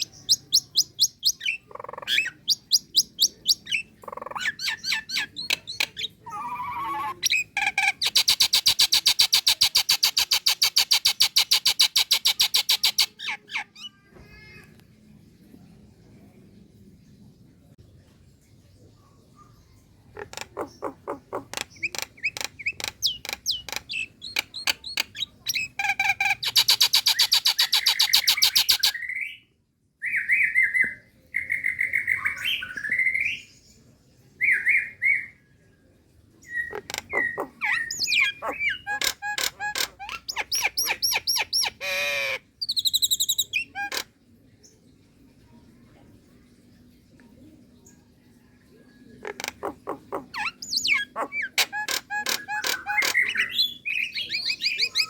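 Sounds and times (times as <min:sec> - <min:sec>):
myna calling: 0:00.0 - 0:10.4, 0:20.1 - 0:28.9, 0:36.7 - 0:42.4, 0:49.2 - 0:55.0.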